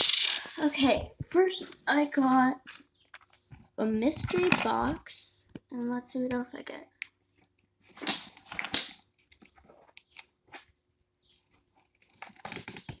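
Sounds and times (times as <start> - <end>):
plastic rattling: 3.1 - 5.0.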